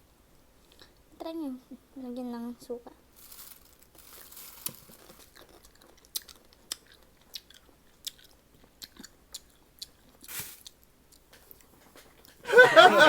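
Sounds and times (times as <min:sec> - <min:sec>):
person biting and chewing: 0:04.6 - 0:10.9.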